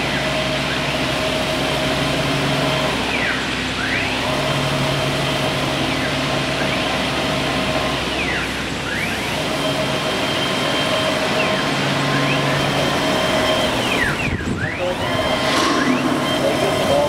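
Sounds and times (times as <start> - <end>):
drive motors whining: 0.0 - 17.0
steady machine hum: 0.0 - 17.0.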